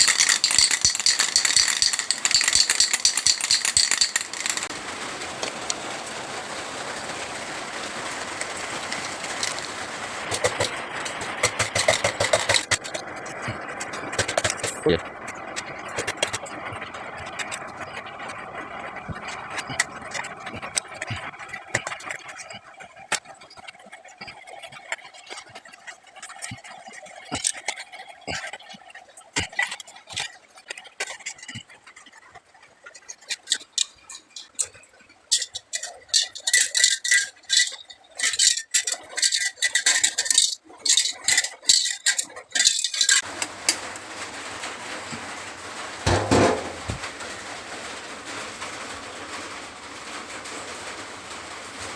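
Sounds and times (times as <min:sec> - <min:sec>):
clicks and knocks: 0:00.0 - 0:04.7, 0:13.8 - 0:14.8, 0:46.1 - 0:47.1
fast metallic rattling: 0:00.0 - 0:04.7, 0:08.4 - 0:15.0, 0:32.9 - 0:43.3.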